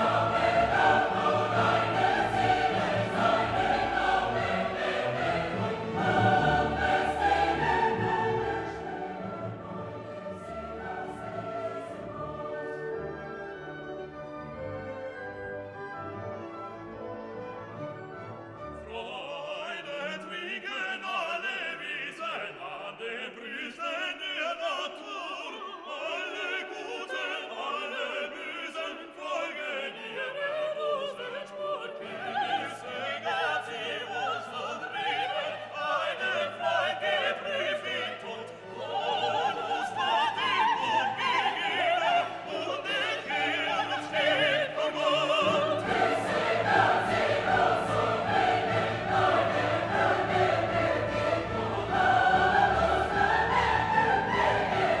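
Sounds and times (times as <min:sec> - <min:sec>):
orchestra playing: 0:00.0 - 0:19.8, 0:38.3 - 0:55.0
opera singers and choir: 0:00.0 - 0:55.0.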